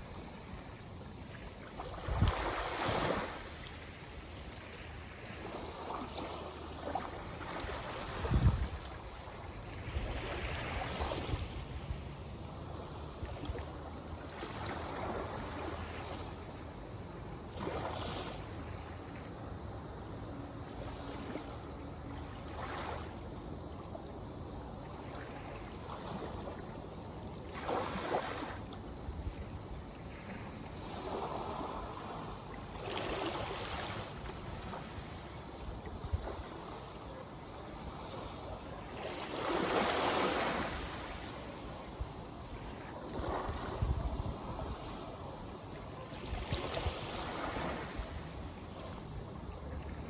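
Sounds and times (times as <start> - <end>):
sea waves breaking on shore: 0.0 - 11.8, 29.9 - 50.0
wind rumble on microphone: 1.9 - 3.3, 7.6 - 12.5, 42.0 - 45.7.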